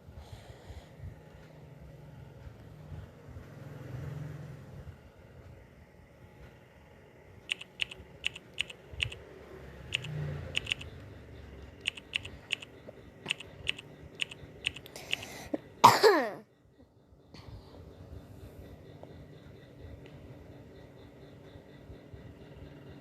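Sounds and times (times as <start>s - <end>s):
sharp irregular clicks: 7.4s - 15.4s.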